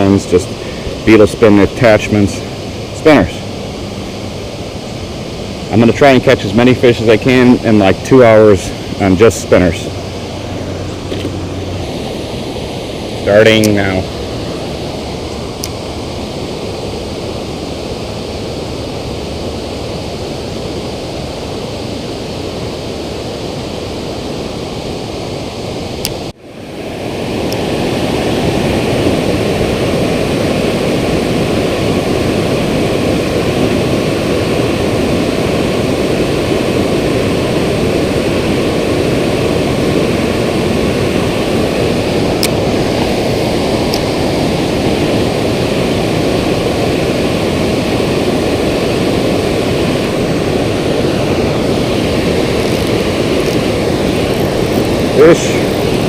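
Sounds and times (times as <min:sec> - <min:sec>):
water rushing over a spillway: 0:26.4 - 0:56.0.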